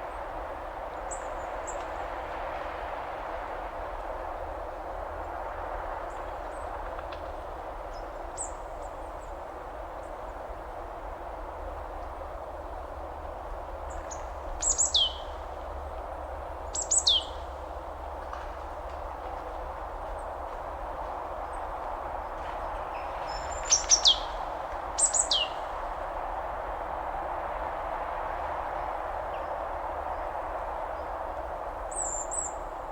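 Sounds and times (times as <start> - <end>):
bird calling: 23.3 - 24.4.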